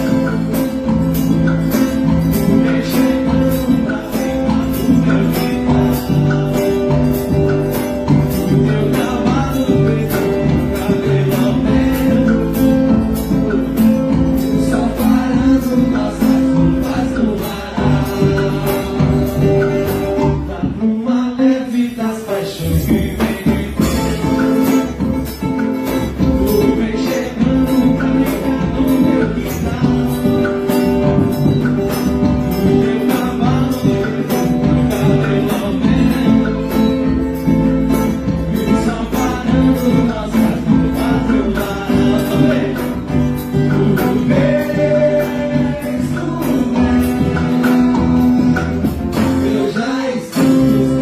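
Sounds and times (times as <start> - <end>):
percussion strikes: 0.0 - 51.0.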